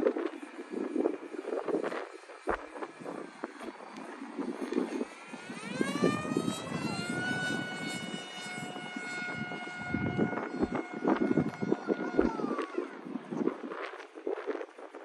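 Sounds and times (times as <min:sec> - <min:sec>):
electric plane motor whining: 0:00.0 - 0:14.6
wind buffeting microphone: 0:00.0 - 0:15.0.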